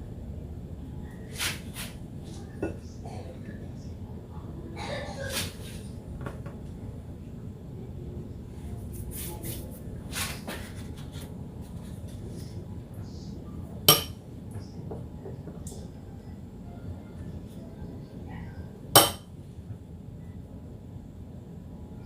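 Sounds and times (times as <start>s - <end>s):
dishes and utensils clinking: 13.9s - 14.2s, 19.0s - 19.3s.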